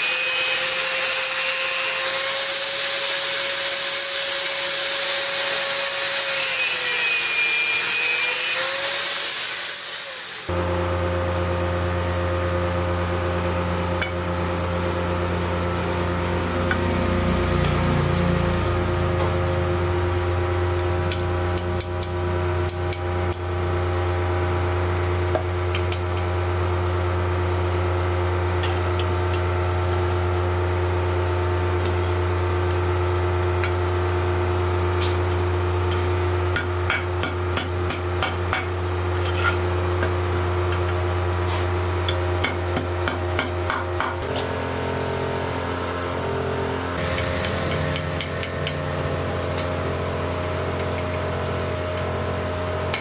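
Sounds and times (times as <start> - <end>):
machine humming: 44.2 - 53.0.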